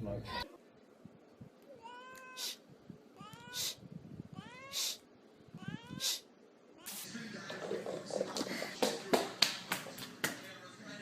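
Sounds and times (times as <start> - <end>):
cat meowing: 1.7 - 2.6, 3.2 - 5.0.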